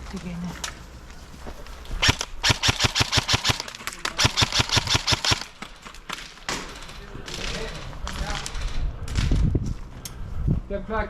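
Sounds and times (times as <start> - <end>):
airsoft gun shots: 2.0 - 5.7.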